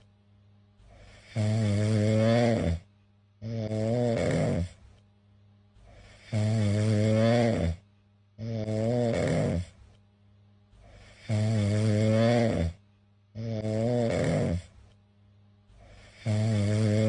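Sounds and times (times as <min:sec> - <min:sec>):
cat snoring: 0:00.9 - 0:04.8, 0:05.8 - 0:07.8, 0:08.4 - 0:09.8, 0:10.8 - 0:12.8, 0:13.4 - 0:14.8, 0:15.8 - 0:17.0.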